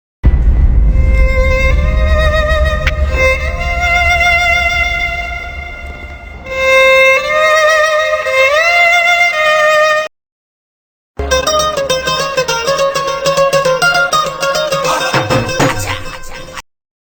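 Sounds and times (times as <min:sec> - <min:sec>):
violin slow melody: 0:00.6 - 0:10.1
music with plucked notes: 0:11.2 - 0:16.6.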